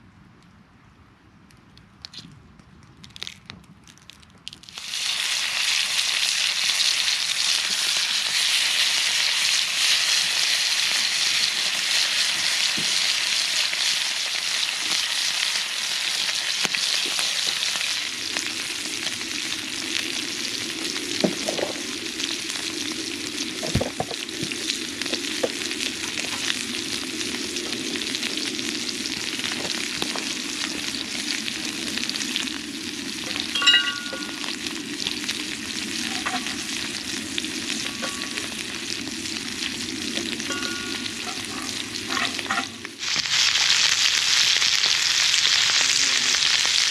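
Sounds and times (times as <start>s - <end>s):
food sizzling in a skillet: 4.7s - 46.9s
low steady hum: 18.1s - 43.0s.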